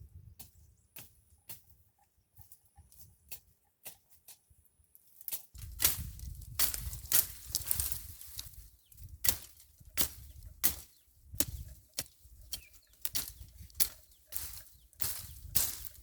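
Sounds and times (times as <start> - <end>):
bladed tool swishing through weeds: 5.6 - 16.0.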